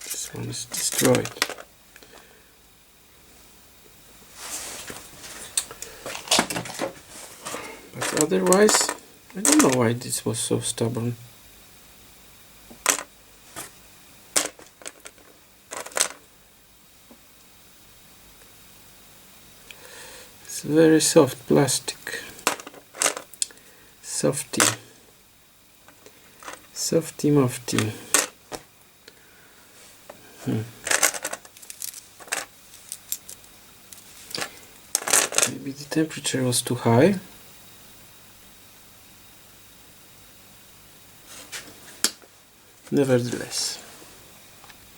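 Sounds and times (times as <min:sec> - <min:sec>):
hard objects clicking and clinking: 0:00.0 - 0:01.7, 0:08.0 - 0:09.8, 0:12.8 - 0:13.1, 0:14.4 - 0:16.2, 0:22.4 - 0:23.5, 0:30.8 - 0:35.5.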